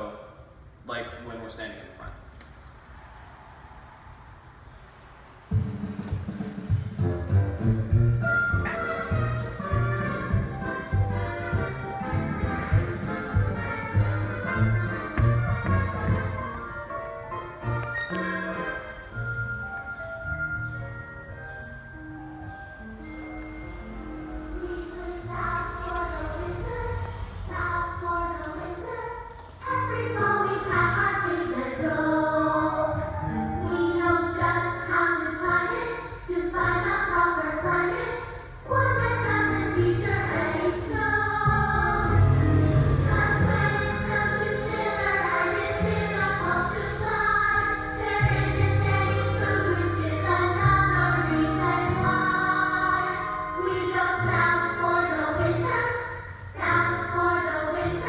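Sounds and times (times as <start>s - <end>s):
instrumental accompaniment: 5.6s - 26.9s, 38.9s - 56.0s
children singing in unison: 24.6s - 58.0s
children singing in chorus: 43.0s - 58.0s.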